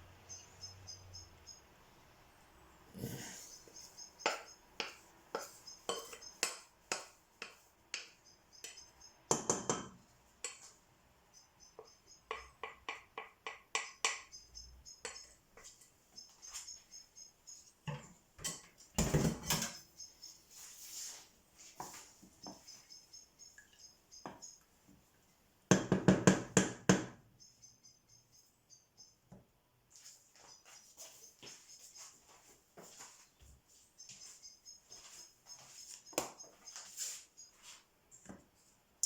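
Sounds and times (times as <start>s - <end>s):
pots and utensils clinking: 5.4s - 7.0s, 17.9s - 19.9s.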